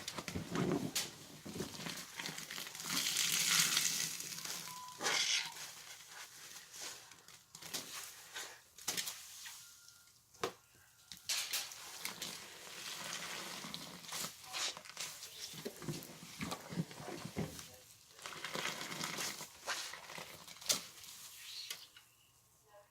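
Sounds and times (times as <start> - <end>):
soapy sponge squelching: 11.8 - 21.7.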